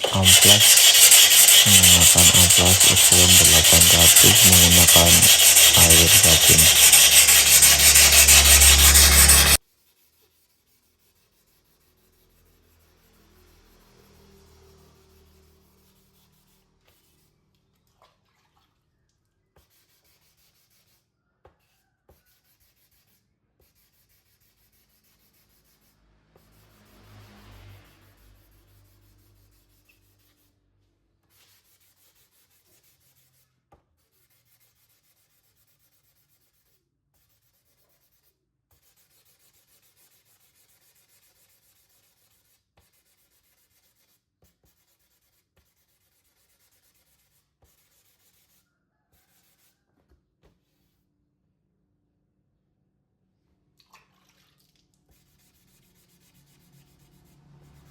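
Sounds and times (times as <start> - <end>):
wet sanding rubbing: 0.0 - 9.6.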